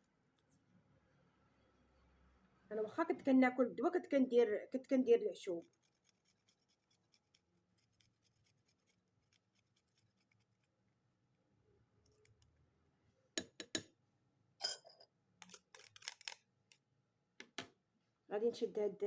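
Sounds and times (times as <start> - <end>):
faint scratches and ticks: 0.0 - 0.8, 5.5 - 10.9, 12.0 - 12.6.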